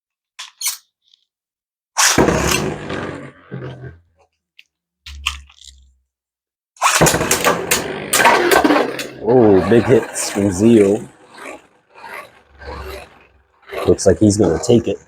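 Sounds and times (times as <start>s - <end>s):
spinning top launch: 2.0s - 3.2s, 6.8s - 13.9s
spinning top whirring rattle: 6.8s - 14.7s.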